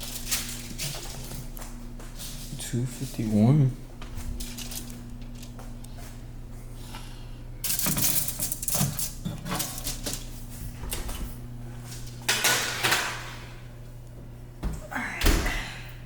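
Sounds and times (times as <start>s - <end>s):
steady low hum: 0.0s - 16.0s
metal utensils and dishes clinking: 7.6s - 10.3s.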